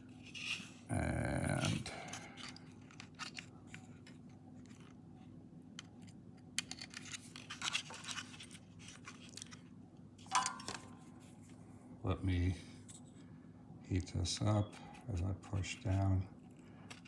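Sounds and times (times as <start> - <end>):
faint steady hum: 0.0 - 17.0
tiny metal parts scratching and clicking: 0.2 - 0.8, 2.1 - 4.1.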